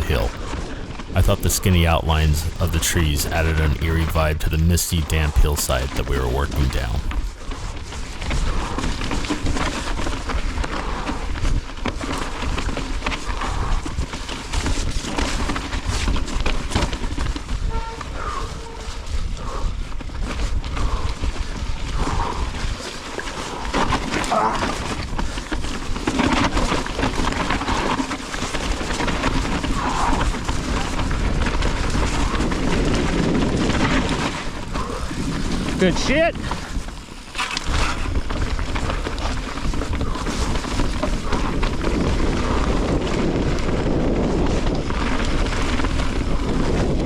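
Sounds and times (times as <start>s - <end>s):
wind rumbling on microphone: 39.5s - 47.0s.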